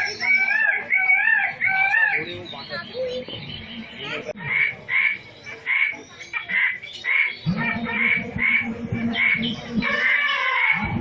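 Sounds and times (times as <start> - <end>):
crows cawing over loudspeakers: 4.4 - 11.0
low buzzing drone: 7.4 - 11.0.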